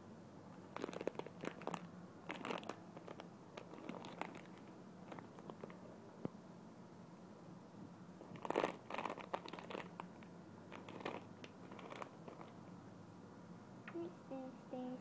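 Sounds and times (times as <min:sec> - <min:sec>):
squishy toys crinkling: 0:00.7 - 0:05.8, 0:08.3 - 0:12.6.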